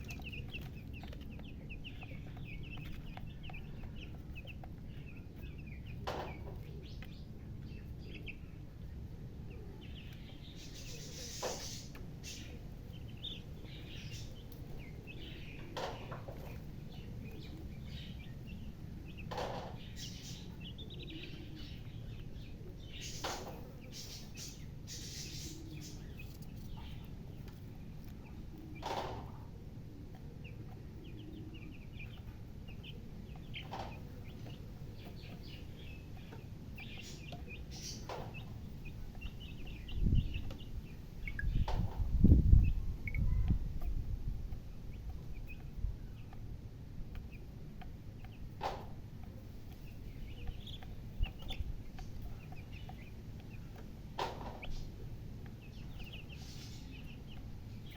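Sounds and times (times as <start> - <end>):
chicks chirping: 0.0 - 57.9
steady low hum: 0.0 - 57.9.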